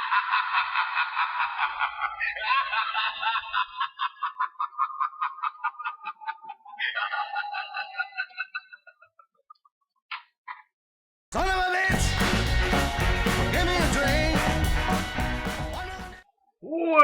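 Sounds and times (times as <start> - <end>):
high-pitched cackling laughter: 0.0 - 10.7.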